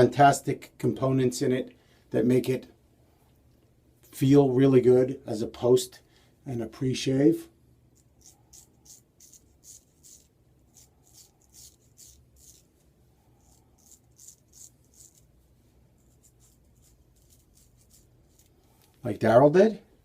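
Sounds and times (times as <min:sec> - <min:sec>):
razor scraping stubble: 0:08.0 - 0:18.9.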